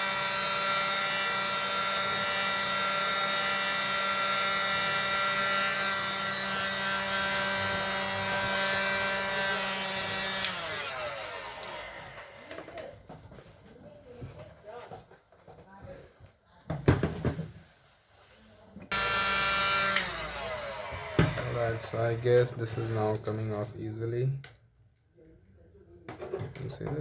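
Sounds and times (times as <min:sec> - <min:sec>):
heat gun motor whine: 0:00.0 - 0:12.6, 0:18.9 - 0:22.3.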